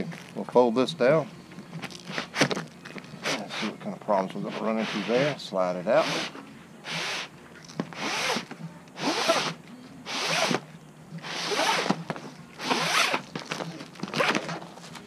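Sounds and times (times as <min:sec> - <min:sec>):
awning fabric rasping through slot: 0:07.9 - 0:10.6, 0:11.2 - 0:12.0, 0:12.6 - 0:13.3.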